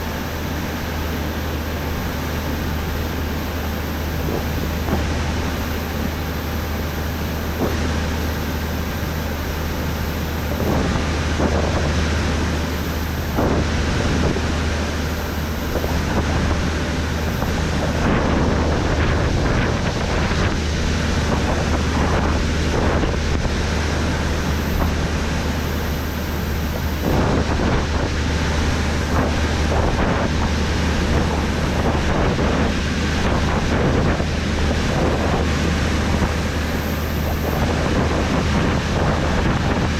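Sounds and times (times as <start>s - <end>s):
combine harvester drone: 0.0s - 39.9s.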